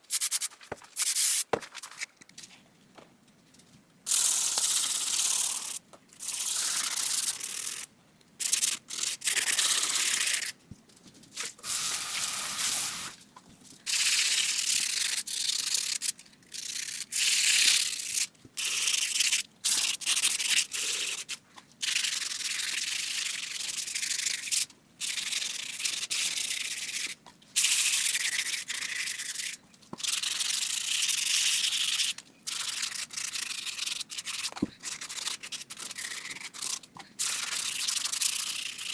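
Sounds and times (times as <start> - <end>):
sandpaper rubbing: 0.1 - 2.0.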